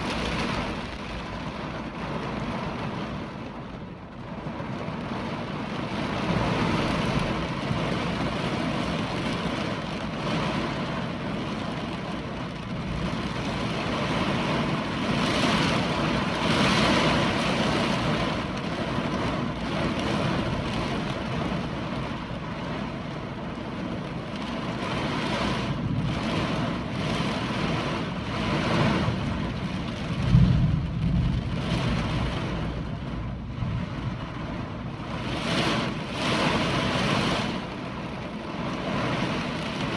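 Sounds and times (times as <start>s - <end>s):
hurricane wind gusting: 0.0s - 39.9s.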